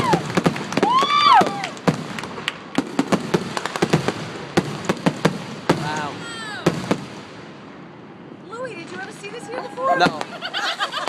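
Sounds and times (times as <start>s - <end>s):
firework whistle: 0.0s - 1.8s
fireworks popping and banging: 0.0s - 7.8s, 8.7s - 11.0s.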